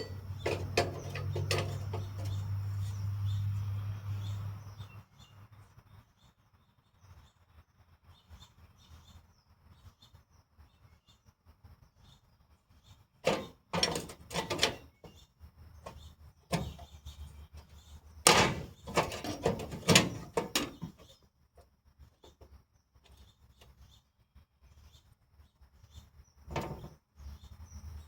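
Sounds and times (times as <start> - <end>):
sheet metal scraping and rattling: 0.0 - 3.0, 13.2 - 15.1, 15.8 - 16.9, 18.2 - 21.1, 26.5 - 26.9.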